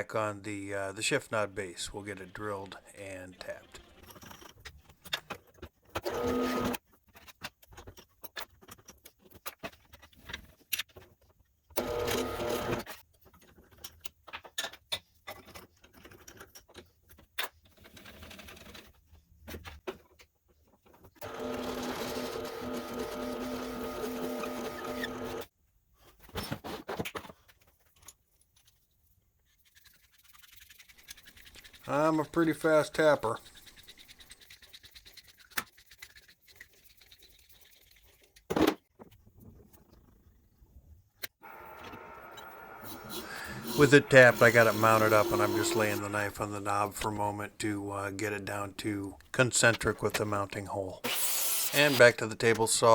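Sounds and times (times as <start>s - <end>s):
clicks and scraping of handling: 6.7s - 11.9s
electric drill running: 11.8s - 12.8s, 21.2s - 25.4s, 41.4s - 46.2s.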